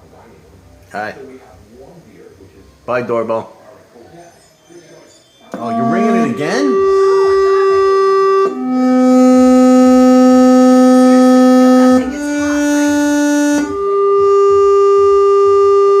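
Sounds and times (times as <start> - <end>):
electronic doorbell chime tones: 5.2 - 8.0.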